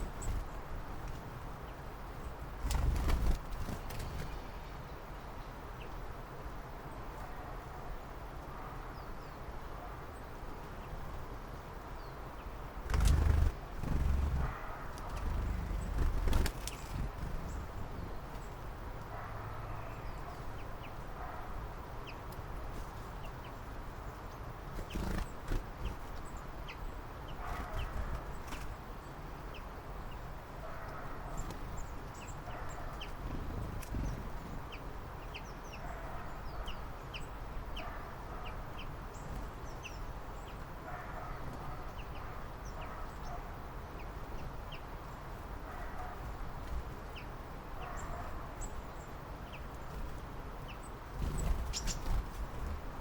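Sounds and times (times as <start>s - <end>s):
birds chirping: 0.0s - 6.0s, 12.0s - 43.4s, 45.8s - 53.0s.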